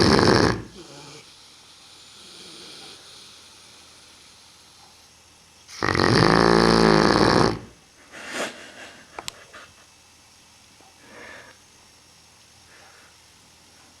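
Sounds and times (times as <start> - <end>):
dog snoring: 0.0 - 4.8, 5.7 - 7.8.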